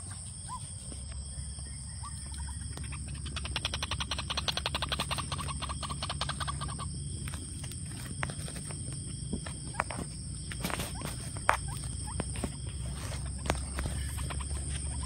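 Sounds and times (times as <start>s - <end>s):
steady low hum: 0.0s - 15.0s
waterhen calling: 1.8s - 7.0s.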